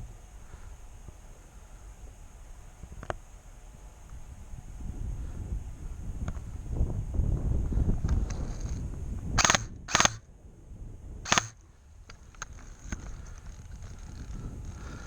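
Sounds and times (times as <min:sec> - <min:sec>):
wind noise: 0:02.0 - 0:15.0
handling rumble: 0:04.9 - 0:15.0
airsoft gun shots: 0:09.4 - 0:10.2, 0:11.2 - 0:15.0.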